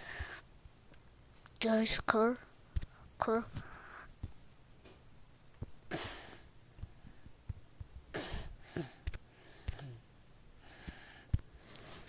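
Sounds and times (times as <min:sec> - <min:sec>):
person breathing close to microphone: 0:00.0 - 0:00.5, 0:02.9 - 0:04.2, 0:08.1 - 0:12.0.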